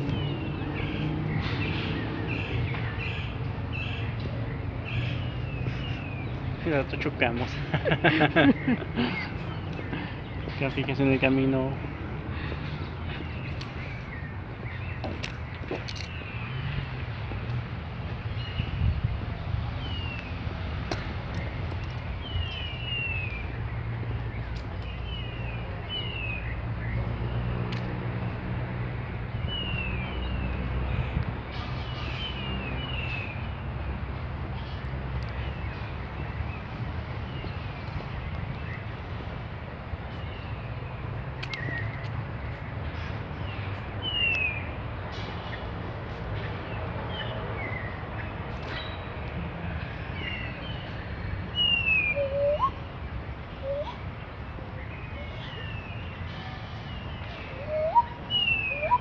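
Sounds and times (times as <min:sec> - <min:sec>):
bird-like whistles sliding downward: 0:51.6 - 0:52.8, 0:53.6 - 0:54.0, 0:57.6 - 0:59.0.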